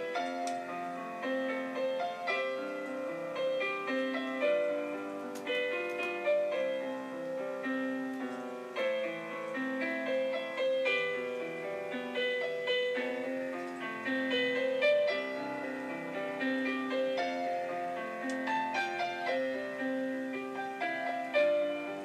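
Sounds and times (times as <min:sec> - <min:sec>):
gentle piano music: 0:00.0 - 0:22.0.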